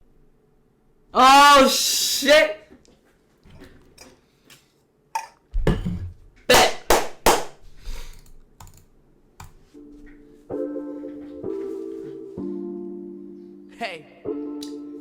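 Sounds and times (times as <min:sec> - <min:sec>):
held keyboard-like notes: 0:09.7 - 0:15.0.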